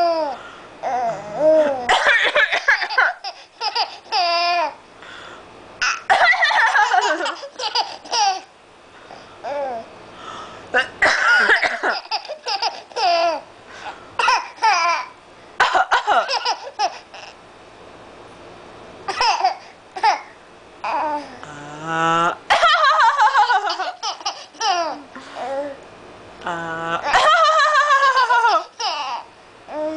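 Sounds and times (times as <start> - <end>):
baby laughing: 1.5 - 4.8, 5.8 - 8.5, 11.3 - 13.4, 14.2 - 15.2, 15.9 - 17.4, 19.1 - 20.3, 22.5 - 25.5, 27.0 - 29.3
baby coughing: 5.8 - 6.4, 10.8 - 13.4, 14.2 - 17.3, 19.1 - 20.3.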